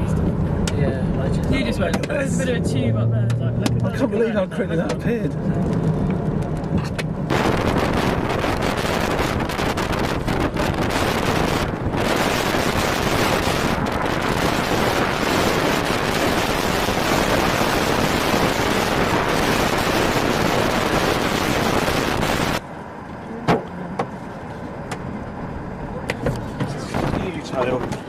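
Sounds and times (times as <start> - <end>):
wind buffeting microphone: 7.2 - 22.6, 26.7 - 28.0.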